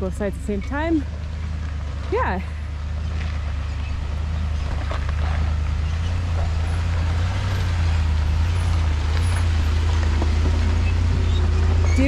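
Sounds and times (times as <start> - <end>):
low engine drone: 0.0 - 12.0.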